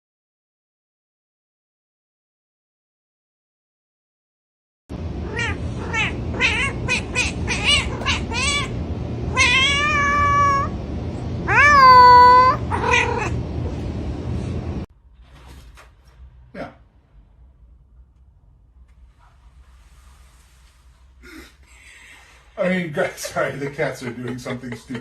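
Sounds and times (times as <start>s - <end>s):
cat meowing: 5.2s - 10.7s, 11.4s - 13.4s.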